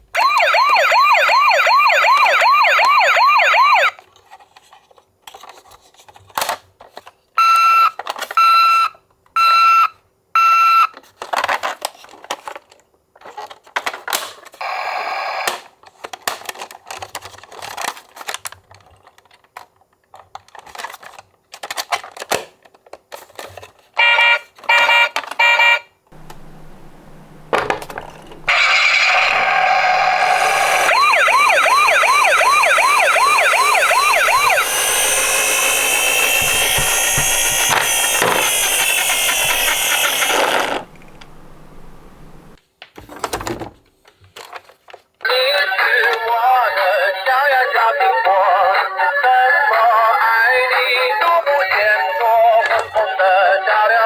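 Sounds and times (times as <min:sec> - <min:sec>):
toy siren warbling: 0:00.2 - 0:03.9, 0:27.6 - 0:41.2
plastic clicks and knocks: 0:26.2 - 0:28.5.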